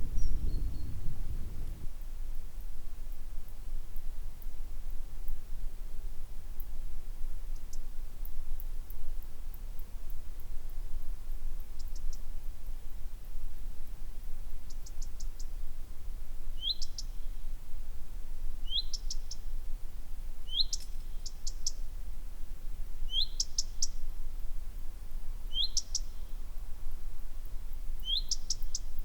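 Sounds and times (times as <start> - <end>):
small bird singing: 0.0 - 1.1, 14.6 - 15.5, 16.6 - 17.3, 18.6 - 19.4, 20.5 - 21.9, 23.1 - 24.0, 25.5 - 26.4, 28.0 - 29.0.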